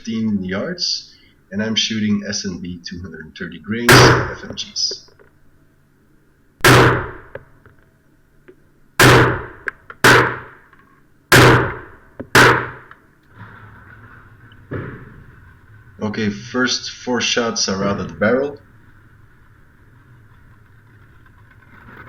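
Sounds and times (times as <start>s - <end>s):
pistol shots: 3.9s - 4.5s, 6.6s - 7.3s, 9.0s - 10.6s, 11.3s - 12.9s.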